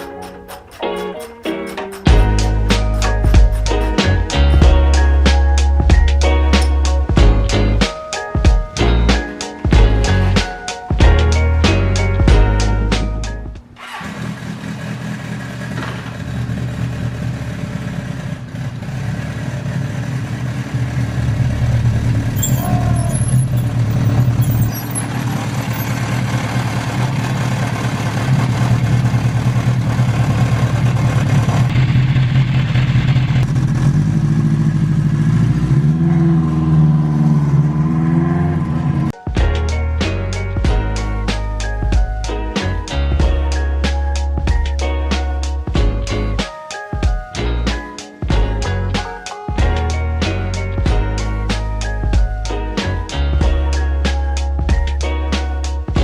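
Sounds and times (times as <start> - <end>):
background music: 0.0 - 13.7, 39.1 - 56.0
motorcycle engine revving: 12.4 - 39.2.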